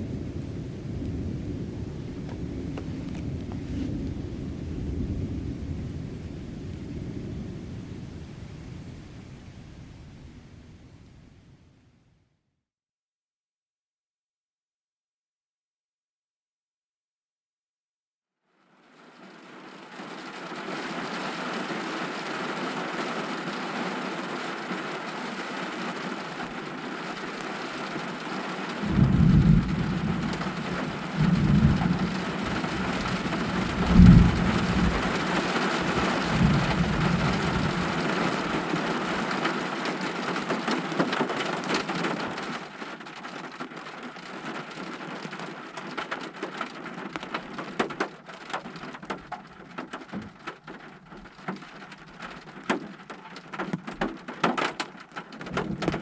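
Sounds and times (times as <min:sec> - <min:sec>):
heavy rain pouring: 0:00.0 - 0:11.7, 0:18.8 - 0:56.0
thunder rumbling: 0:00.0 - 0:11.7, 0:26.0 - 0:45.5.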